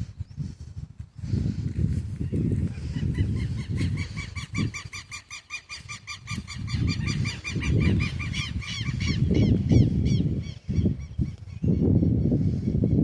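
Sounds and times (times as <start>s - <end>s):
bird calling rapidly: 2.9s - 10.3s.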